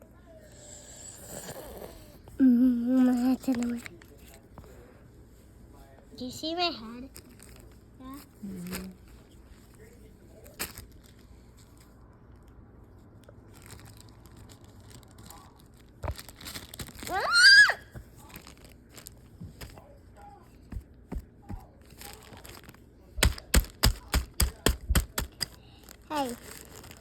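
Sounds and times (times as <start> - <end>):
handling clicks and crinkles: 3.2 - 4.5, 7.1 - 17.2, 18.0 - 19.9, 20.8 - 27.0
child's high squeal: 17.1 - 17.9.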